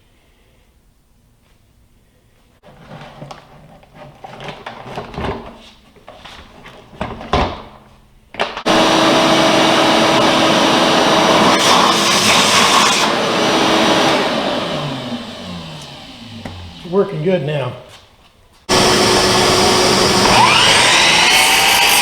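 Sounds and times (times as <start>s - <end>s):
shop vacuum running: 8.7s - 17.8s, 18.7s - 22.0s.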